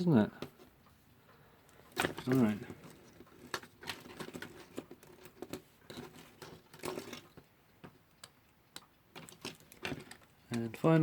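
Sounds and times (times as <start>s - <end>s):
small metal parts clicking and scraping: 1.7s - 11.0s.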